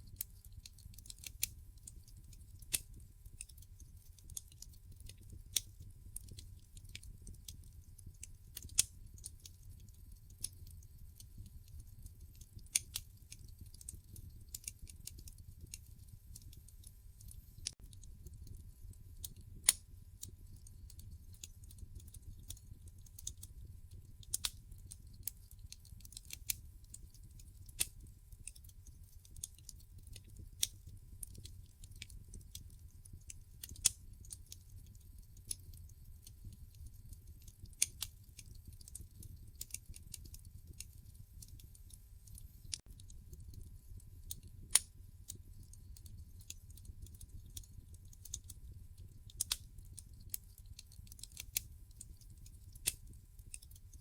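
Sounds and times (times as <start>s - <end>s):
wood fire crackling and popping: 0.0s - 54.0s.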